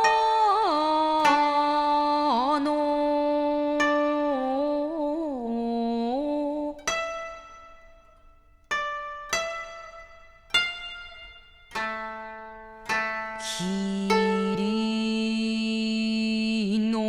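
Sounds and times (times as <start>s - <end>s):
woman singing slowly: 0.0s - 6.9s, 13.4s - 17.0s
koto string plucked: 0.0s - 16.4s.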